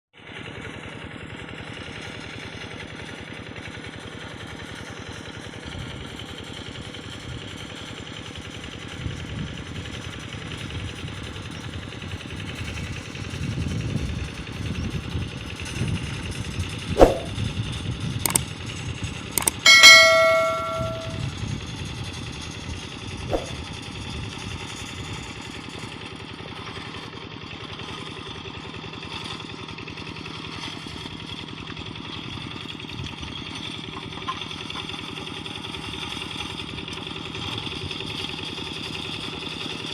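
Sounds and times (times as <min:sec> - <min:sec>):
sharp metal clanks: 0:17.0 - 0:17.4, 0:19.4 - 0:21.3, 0:23.3 - 0:23.6.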